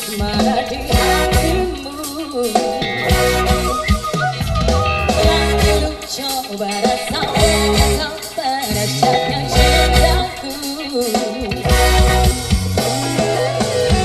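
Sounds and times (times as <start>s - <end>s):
guitar: 0.0s - 14.0s
person singing: 0.0s - 14.0s
deep held bass notes: 0.3s - 2.0s, 2.6s - 6.0s, 7.1s - 8.1s, 8.7s - 10.4s, 11.6s - 14.0s.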